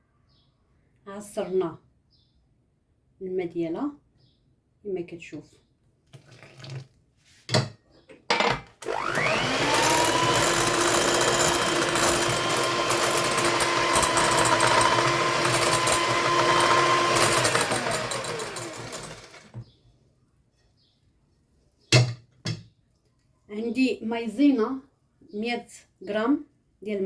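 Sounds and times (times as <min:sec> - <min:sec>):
electric mixer whining: 0:08.8 - 0:19.6.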